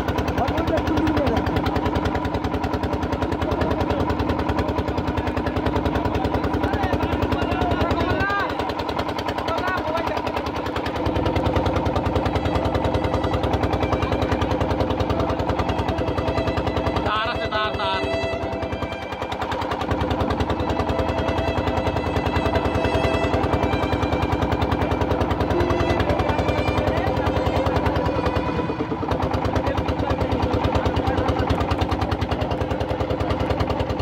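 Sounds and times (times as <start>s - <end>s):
engine chugging: 0.0s - 34.0s.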